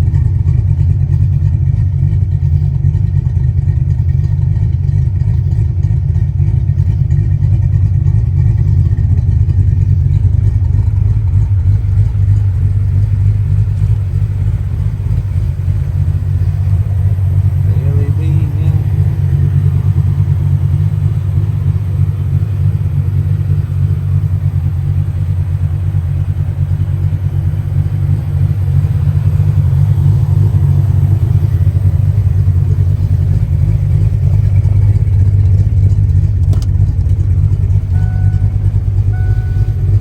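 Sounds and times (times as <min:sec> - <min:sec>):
car engine running: 0:00.0 - 0:40.0
faint short beeps: 0:37.9 - 0:40.0.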